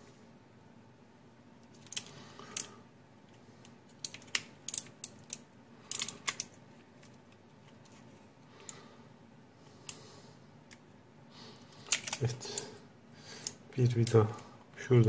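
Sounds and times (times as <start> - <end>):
keyboard parts clicking: 11.8 - 12.7.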